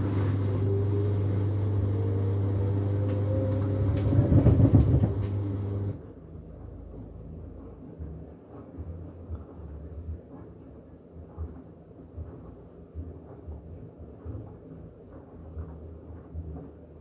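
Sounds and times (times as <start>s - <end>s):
washing machine motor whine: 0.0s - 6.1s.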